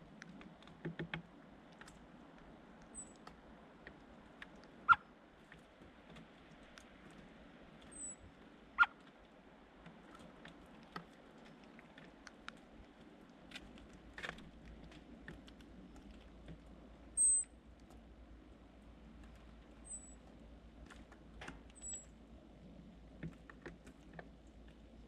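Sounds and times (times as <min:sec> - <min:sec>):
high thin bird chirp: 0:17.2 - 0:17.5.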